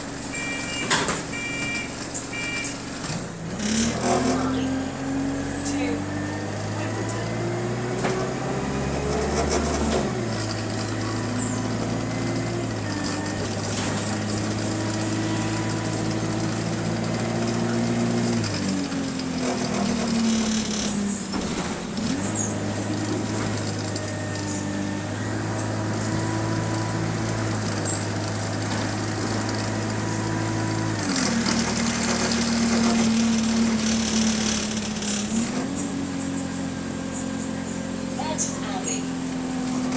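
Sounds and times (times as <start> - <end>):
bus engine running: 0.0 - 39.9.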